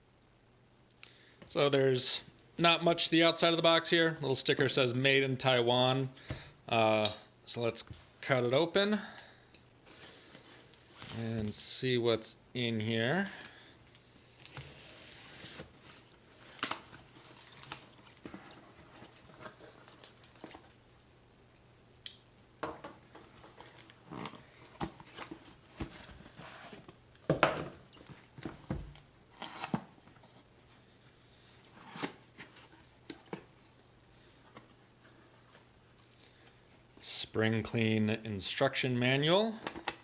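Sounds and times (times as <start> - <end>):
cardboard box rustling and scraping: 23.6 - 27.0.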